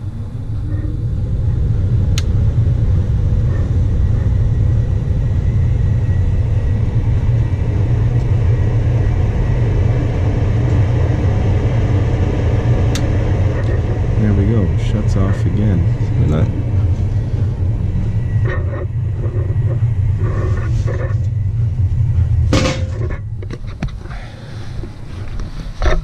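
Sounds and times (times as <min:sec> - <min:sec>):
furnace fan low rumble: 0:00.0 - 0:26.0.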